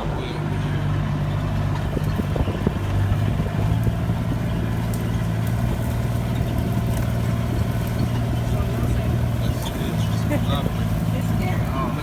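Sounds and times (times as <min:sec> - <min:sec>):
knocks and rattles from ride: 0:00.0 - 0:12.0
vehicle engine running: 0:00.0 - 0:12.0.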